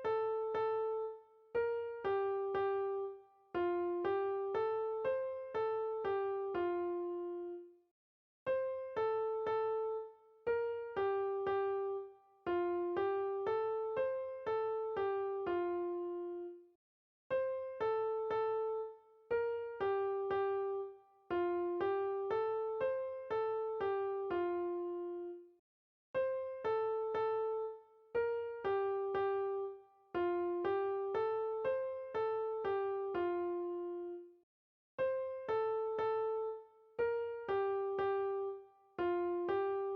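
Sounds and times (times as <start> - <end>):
gentle keyboard melody: 0.0 - 7.8, 8.5 - 16.7, 17.3 - 25.6, 26.2 - 34.4, 35.0 - 39.9.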